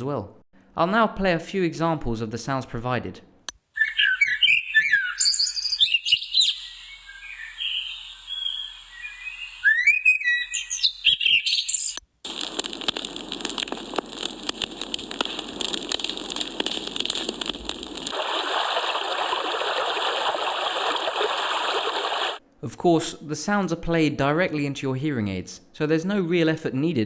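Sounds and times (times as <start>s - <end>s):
birdsong with sliding whistles: 3.8s - 12.0s
crackling hiss: 6.6s - 10.8s, 11.8s - 22.4s
rushing water sound: 15.5s - 22.4s.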